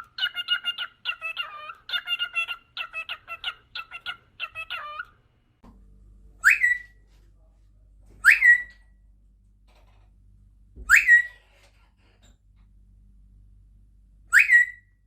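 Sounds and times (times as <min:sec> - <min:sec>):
parrot whistling: 0:00.0 - 0:05.1, 0:06.4 - 0:07.0, 0:08.2 - 0:08.8, 0:10.9 - 0:11.4, 0:14.3 - 0:14.9.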